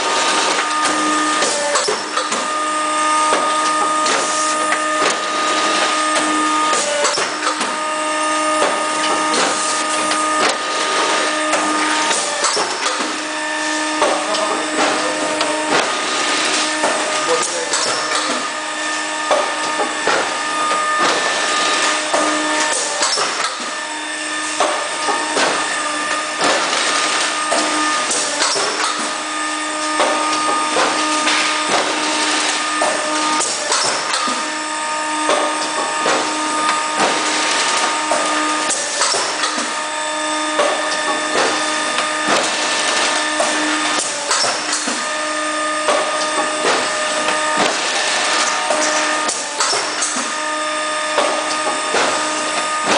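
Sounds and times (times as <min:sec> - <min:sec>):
steady mechanical hum: 0:00.0 - 0:52.9.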